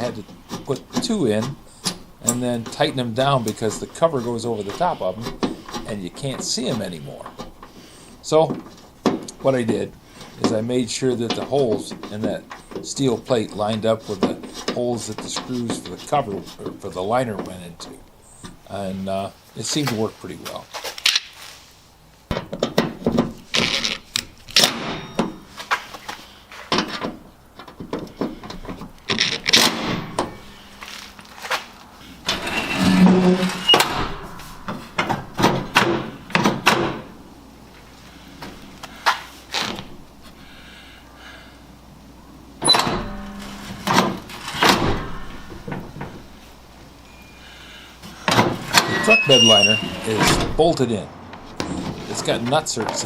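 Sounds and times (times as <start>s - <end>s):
clunks and knocks on tailgate hardware: 22.3s - 23.4s
metal parts clicking and knocking: 22.3s - 25.4s, 26.7s - 30.5s.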